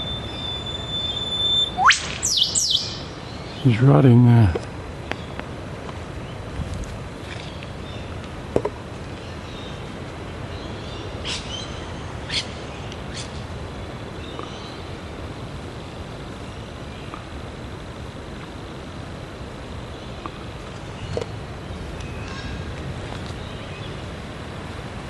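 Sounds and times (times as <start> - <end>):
faint bird chirps: 0.0 - 3.8
sharp bird calls: 0.0 - 3.8, 10.6 - 13.4
road traffic hum: 0.0 - 25.0.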